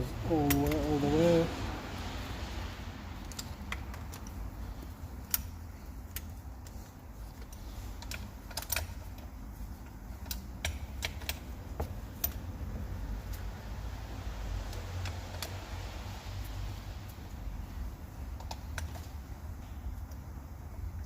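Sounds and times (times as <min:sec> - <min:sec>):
steady low hum: 0:00.0 - 0:21.0
hand tools clicking on bolts: 0:00.3 - 0:01.2.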